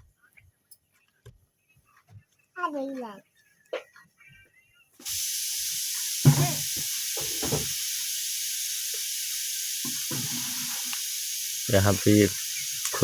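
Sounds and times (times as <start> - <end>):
steady hiss: 5.0 - 13.0.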